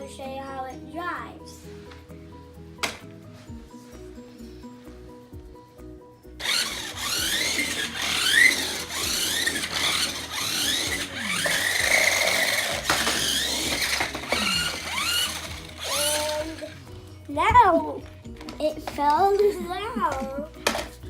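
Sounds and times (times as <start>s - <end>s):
background music: 0.0s - 21.0s
toy car electric motor whining: 6.4s - 16.8s.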